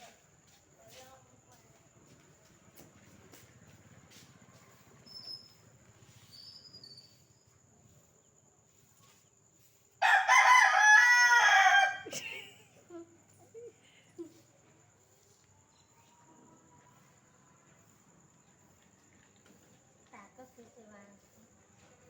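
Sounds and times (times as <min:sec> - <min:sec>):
rooster crowing: 0:10.0 - 0:12.6.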